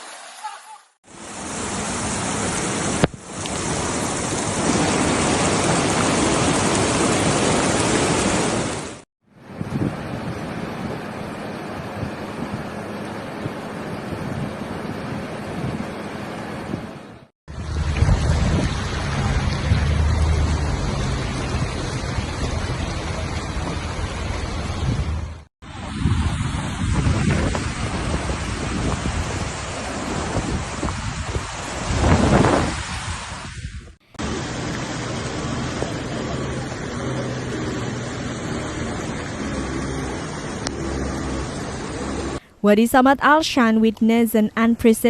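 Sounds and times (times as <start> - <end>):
rain: 0.0 - 9.0, 17.5 - 42.4
water rushing: 0.0 - 42.4.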